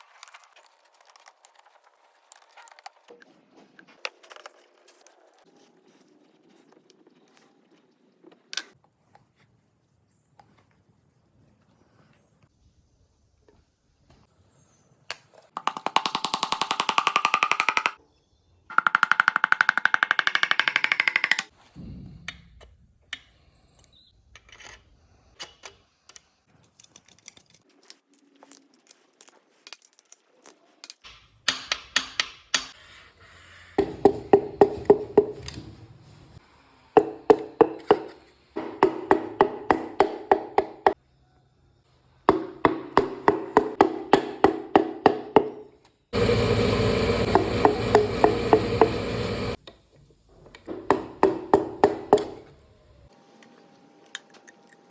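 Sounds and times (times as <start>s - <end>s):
fast buzzing rattle: 46.2s - 49.6s.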